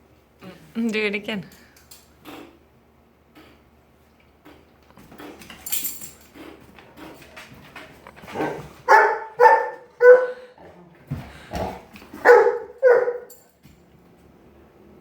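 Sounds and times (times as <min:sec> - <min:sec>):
dog barking: 0:08.4 - 0:10.4, 0:12.2 - 0:13.3.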